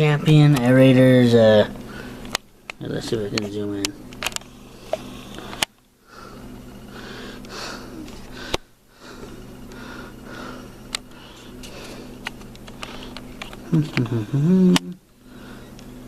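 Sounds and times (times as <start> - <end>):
low electrical hum: 0.0 - 16.0
close breathing and sniffing: 1.8 - 2.3, 4.4 - 13.7.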